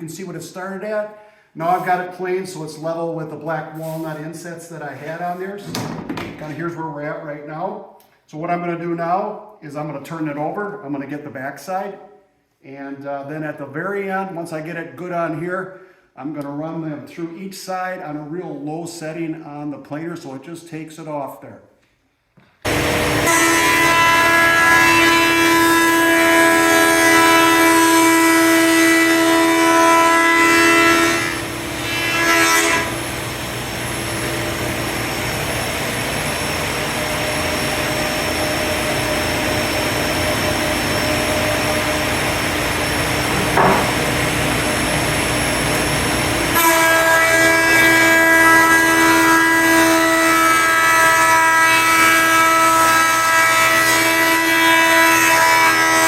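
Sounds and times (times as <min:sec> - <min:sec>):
board feeding through planer: 0:22.7 - 0:56.0
thickness planer whine: 0:22.7 - 0:56.0.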